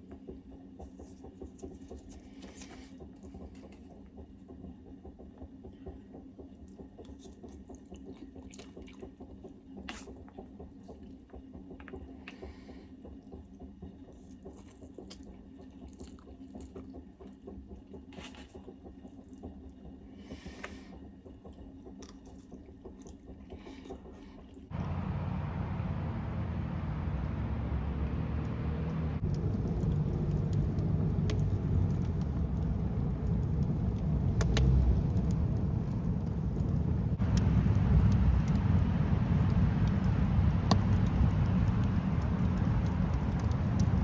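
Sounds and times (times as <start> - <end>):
low steady hum: 0.0 - 44.0.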